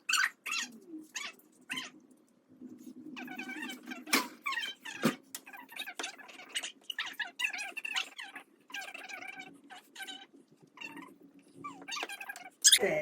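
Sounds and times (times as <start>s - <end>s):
high-pitched animal cries: 0.0s - 2.0s, 3.2s - 12.8s.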